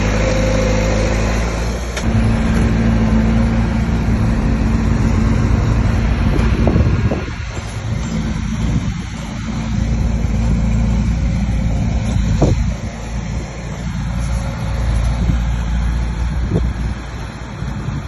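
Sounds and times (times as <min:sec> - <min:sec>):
bulldozer diesel engine running: 0:00.0 - 0:18.0.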